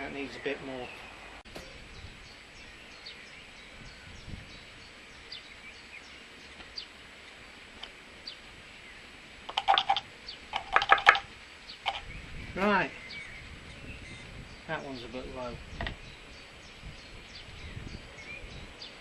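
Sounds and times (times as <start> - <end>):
background hiss: 0.0 - 19.0
small birds chirping: 0.0 - 19.0
sharp knocks and clatters: 9.5 - 11.3.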